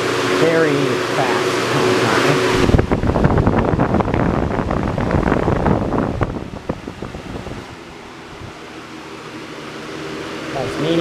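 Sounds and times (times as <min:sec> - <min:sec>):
box fan rushing air: 0:00.0 - 0:11.0
wind buffeting on microphone: 0:02.5 - 0:08.6.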